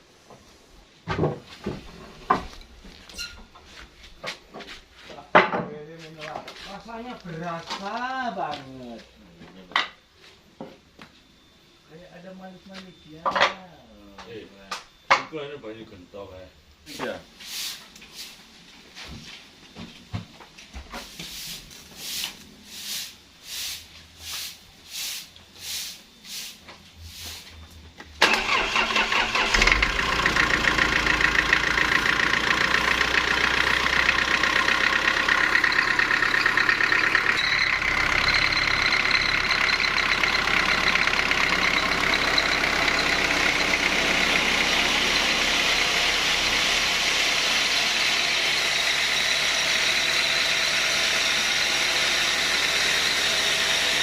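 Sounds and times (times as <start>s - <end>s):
engine starting strokes whooshing: 28.2s - 34.2s.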